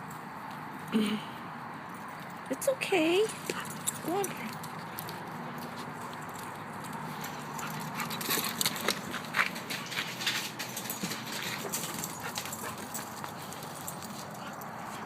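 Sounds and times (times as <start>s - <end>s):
puppy paws scuffling: 3.2s - 15.0s.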